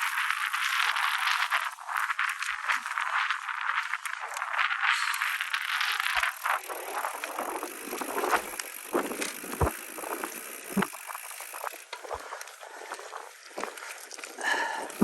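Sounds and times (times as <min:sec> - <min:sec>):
bike tyre and frame rattle: 0:00.0 - 0:15.0
wheels knocking on rocks: 0:05.7 - 0:15.0.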